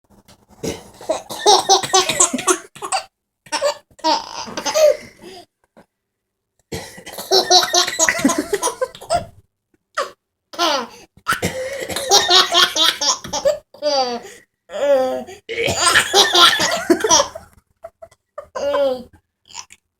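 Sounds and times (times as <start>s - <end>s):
baby laughing: 15.8s - 19.1s.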